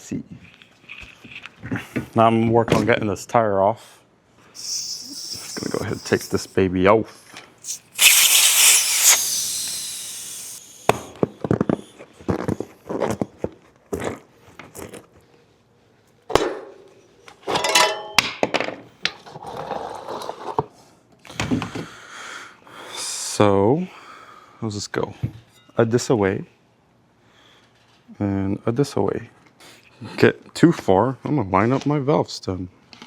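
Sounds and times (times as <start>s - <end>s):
tire rubbing against rim: 4.6s - 6.5s, 7.6s - 10.9s.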